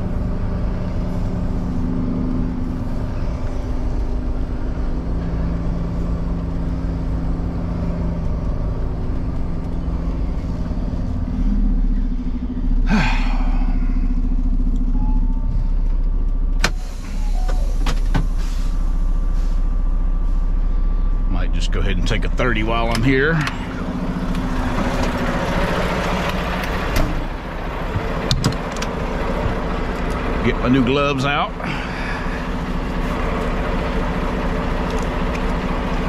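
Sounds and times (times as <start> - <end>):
diesel truck engine running: 0.0 - 36.0
air hissing: 16.7 - 19.6.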